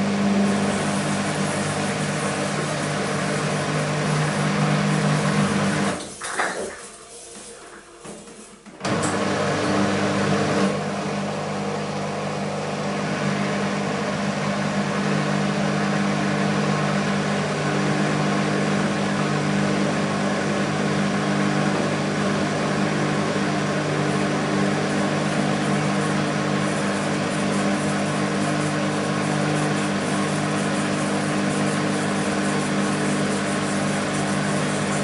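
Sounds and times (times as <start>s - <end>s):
washing machine spinning: 0.0s - 35.0s.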